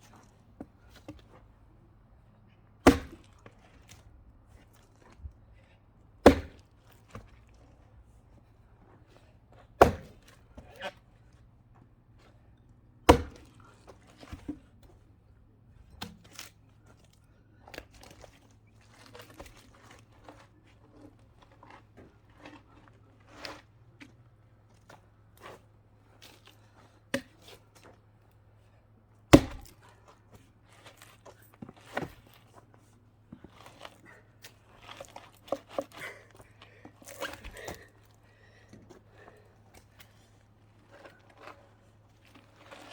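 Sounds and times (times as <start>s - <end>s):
axe splitting log: 2.8s - 3.5s, 6.2s - 7.4s, 9.5s - 11.0s, 13.0s - 14.7s, 15.9s - 16.4s, 27.1s - 27.6s, 29.3s - 30.1s, 30.8s - 32.5s, 33.3s - 38.1s.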